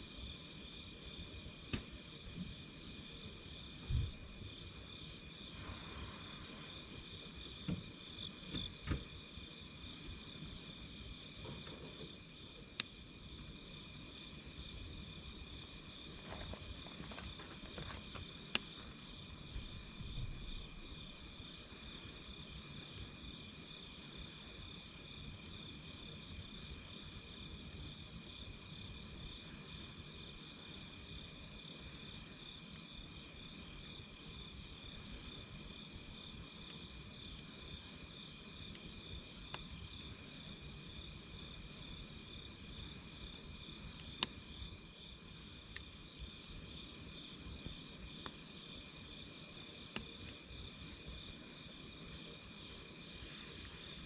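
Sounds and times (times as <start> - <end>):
campfire rumble: 0.0 - 54.0
crickets trilling: 0.0 - 54.0
burning wood popping: 0.2 - 3.2, 10.2 - 21.6, 38.6 - 41.4, 49.6 - 54.0.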